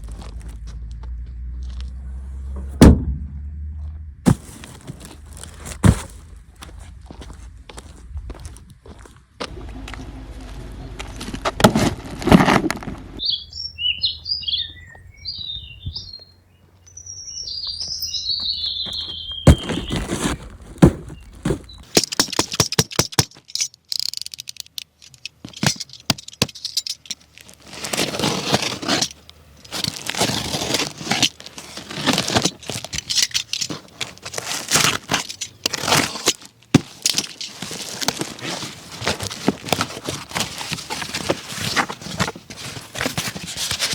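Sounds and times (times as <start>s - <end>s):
high chirps: 13.2s - 20.0s
toy truck clicks and knocks: 21.8s - 27.3s.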